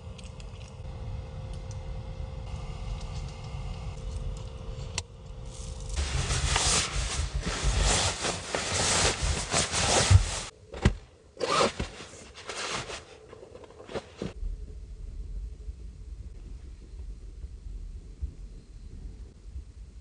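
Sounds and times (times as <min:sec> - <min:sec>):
rubbing and scraping: 0:06.0 - 0:10.5, 0:11.4 - 0:14.4.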